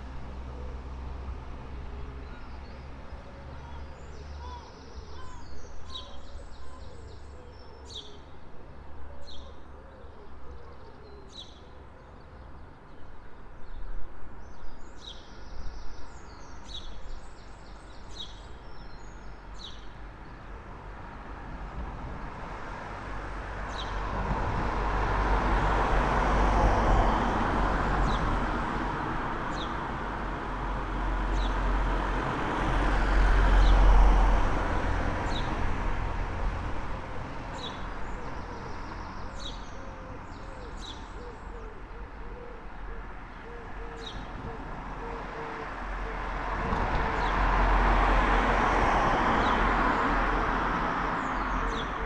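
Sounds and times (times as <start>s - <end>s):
road traffic rumble: 0.0s - 52.0s
birds singing and chirping: 2.2s - 8.3s, 37.6s - 45.4s, 51.2s - 52.0s.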